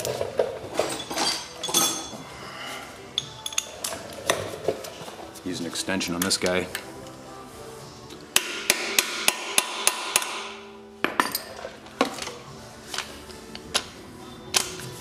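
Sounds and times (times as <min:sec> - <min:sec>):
hammer striking metal: 0:08.4 - 0:11.5.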